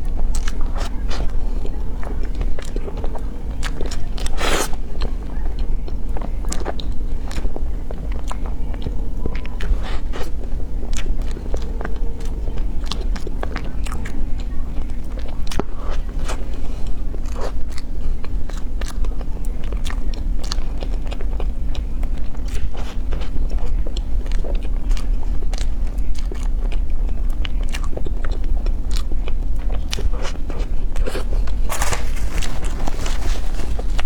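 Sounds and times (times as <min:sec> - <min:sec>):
low hum: 0:00.0 - 0:22.4
crunchy chewing and biting: 0:00.0 - 0:34.0.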